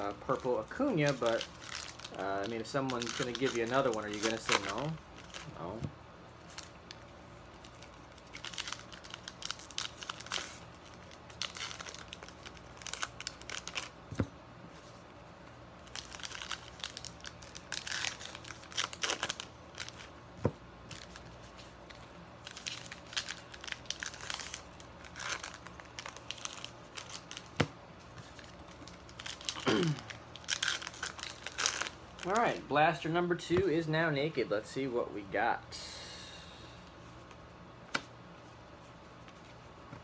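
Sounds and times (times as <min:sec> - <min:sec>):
plastic shrink wrap tearing: 0:00.1 - 0:05.8, 0:07.6 - 0:14.0, 0:15.8 - 0:20.1, 0:22.4 - 0:27.6, 0:28.3 - 0:32.6.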